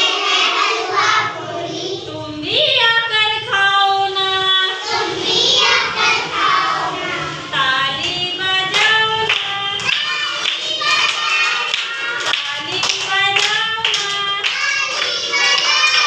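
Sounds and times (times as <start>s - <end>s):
child singing: 4.6s - 16.0s.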